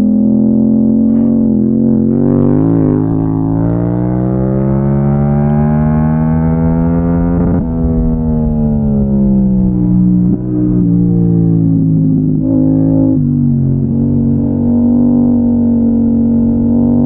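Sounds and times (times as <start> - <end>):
motorcycle engine under throttle: 0.0 - 17.0.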